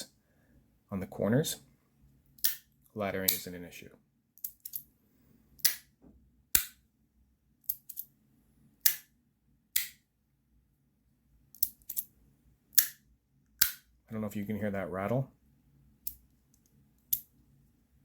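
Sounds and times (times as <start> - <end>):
magnets snapping with sharp clicks: 2.4 - 2.7, 4.4 - 4.8, 5.6 - 5.9, 6.5 - 6.8, 8.8 - 9.1, 9.8 - 10.0, 12.7 - 13.0, 13.6 - 13.9.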